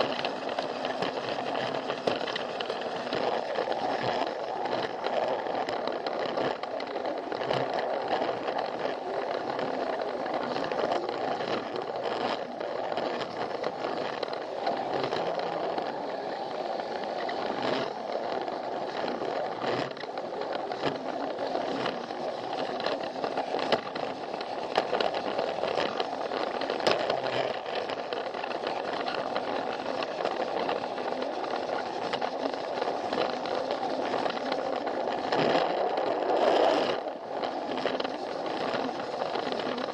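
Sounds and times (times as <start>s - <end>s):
toy train motor whirring: 0.0s - 39.9s
toy train wheels rattling: 0.0s - 39.9s.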